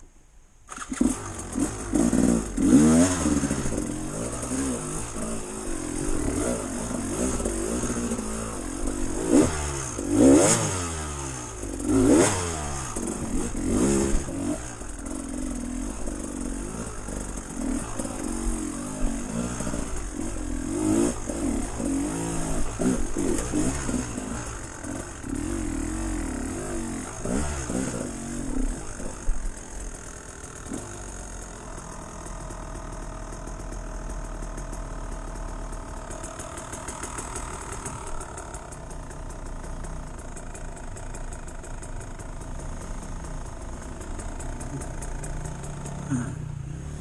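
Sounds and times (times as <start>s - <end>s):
off-road vehicle engine revving: 0.7s - 32.0s, 44.0s - 47.0s.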